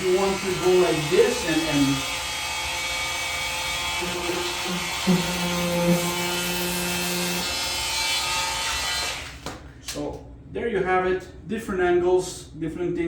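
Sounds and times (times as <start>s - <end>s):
oscillating multi-tool buzzing: 0.1s - 9.3s.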